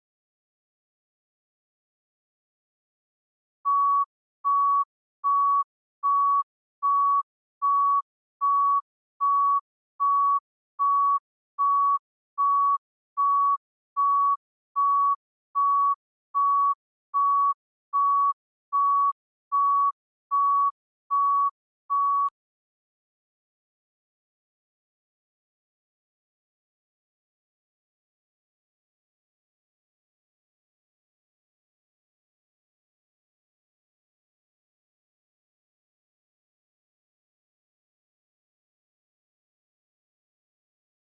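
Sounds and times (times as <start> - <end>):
heart rate monitor beeping: 3.6 - 22.4.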